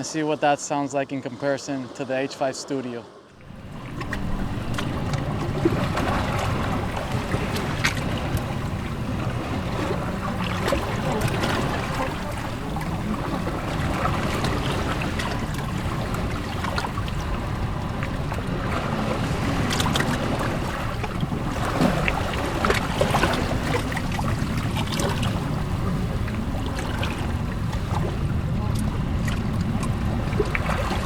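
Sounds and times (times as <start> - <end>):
ocean waves breaking on rocks: 0.0 - 31.0
low wind rumble: 3.0 - 31.0.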